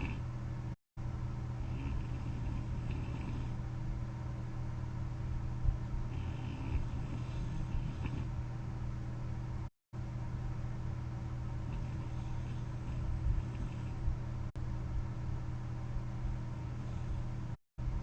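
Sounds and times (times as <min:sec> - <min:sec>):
steady low hum: 0:00.0 - 0:18.0
person breathing with light snoring: 0:01.5 - 0:03.6, 0:06.1 - 0:08.3, 0:11.6 - 0:14.1, 0:16.6 - 0:17.6.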